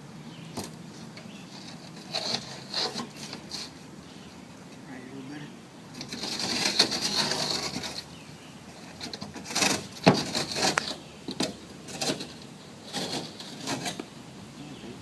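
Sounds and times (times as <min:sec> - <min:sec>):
razor knife scraping drywall: 0:01.7 - 0:03.8, 0:06.0 - 0:08.1, 0:09.1 - 0:11.0, 0:11.9 - 0:14.0.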